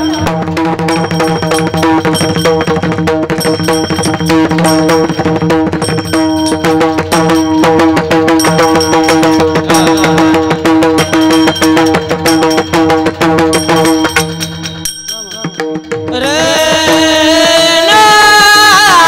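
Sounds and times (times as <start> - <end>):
steady held note: 0.0 - 17.5
sustained melody line: 0.0 - 18.0
fast hand-drum strokes: 0.0 - 19.0.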